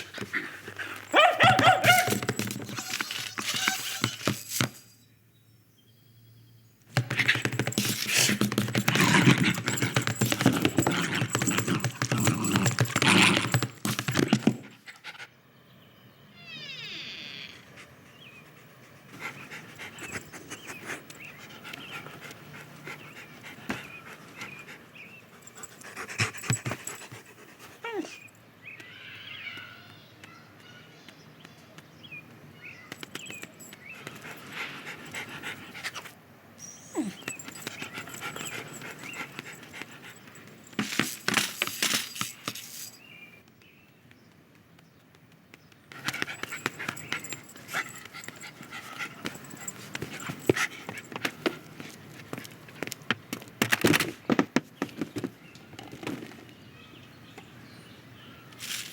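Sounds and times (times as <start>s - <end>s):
dog panting: 7.0s - 13.0s, 17.8s - 28.3s, 33.3s - 36.2s, 36.9s - 41.4s, 45.9s - 52.0s.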